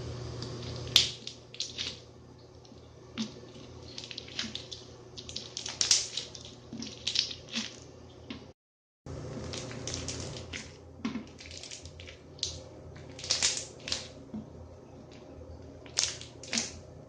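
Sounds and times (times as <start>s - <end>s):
wet squishing: 0.6s - 8.5s, 9.3s - 16.9s
slime crackling and popping: 3.2s - 8.4s, 9.3s - 14.2s, 15.8s - 16.8s.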